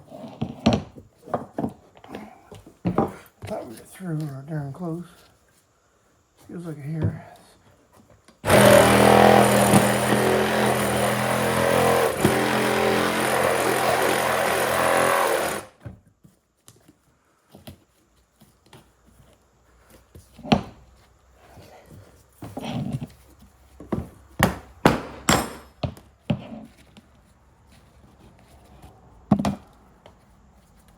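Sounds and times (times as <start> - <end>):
reciprocating saw cutting wood: 8.4 - 15.7.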